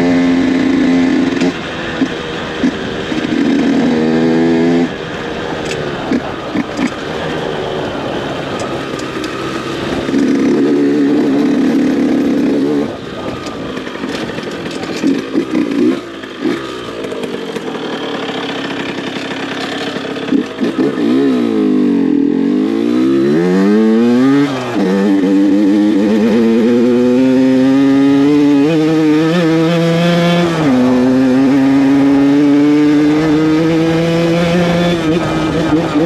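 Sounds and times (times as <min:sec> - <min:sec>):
moped two-stroke engine revving: 0:00.0 - 0:36.0.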